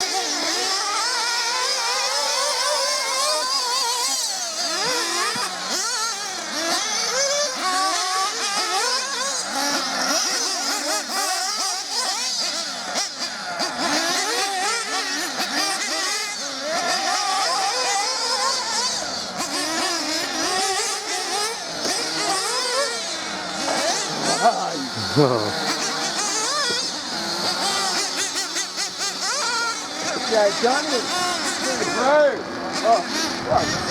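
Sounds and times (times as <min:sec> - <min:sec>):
rc car motors revving: 0:00.0 - 0:33.9.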